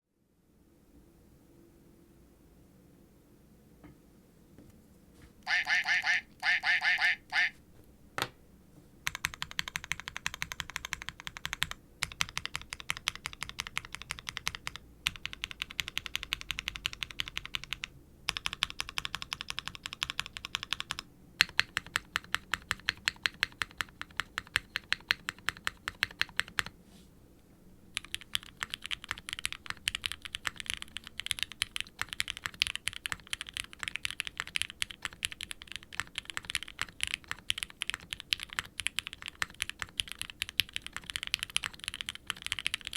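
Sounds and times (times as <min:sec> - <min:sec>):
typing on mechanical keyboard: 0:09.0 - 0:26.7, 0:28.0 - 0:42.9.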